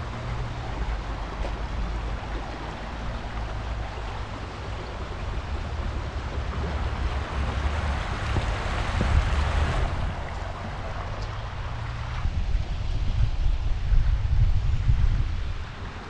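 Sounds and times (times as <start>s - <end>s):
waterfall rushing: 0.0s - 12.1s.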